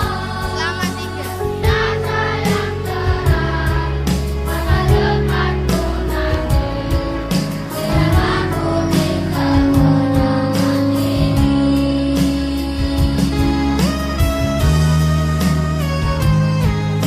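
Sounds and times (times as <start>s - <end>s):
children's choir singing: 0.0s - 12.9s
instrumental accompaniment: 0.0s - 17.0s.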